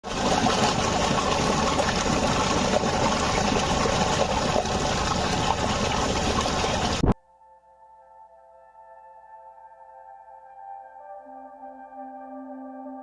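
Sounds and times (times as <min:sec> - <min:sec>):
rushing water: 0:00.0 - 0:07.2.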